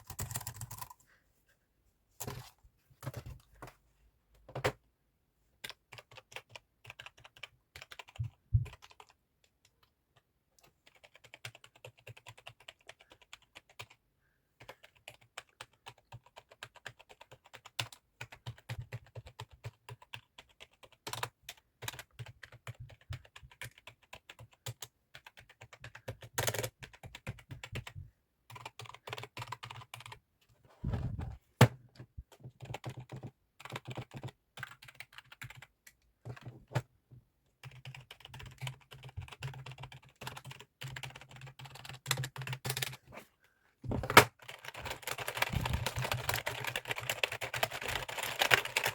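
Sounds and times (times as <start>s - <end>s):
keyboard typing: 0.0s - 1.0s, 5.6s - 9.9s, 10.6s - 14.0s, 14.6s - 30.2s, 32.4s - 36.8s, 37.6s - 43.0s, 44.2s - 48.9s.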